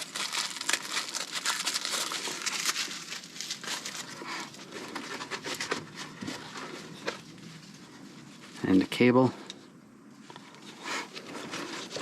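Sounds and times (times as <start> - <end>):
plastic packaging crinkling: 0.0 - 7.4.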